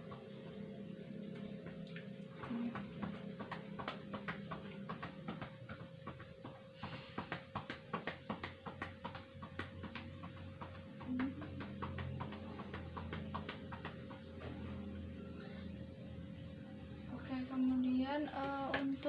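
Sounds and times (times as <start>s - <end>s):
faint steady hum: 0.0s - 19.0s
hands patting on back: 2.4s - 14.9s.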